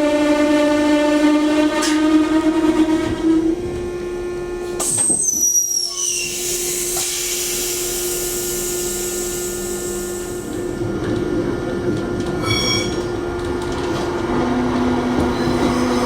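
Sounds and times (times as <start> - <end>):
disc brakes squealing: 5.1 - 6.6, 12.4 - 13.2, 15.3 - 16.0.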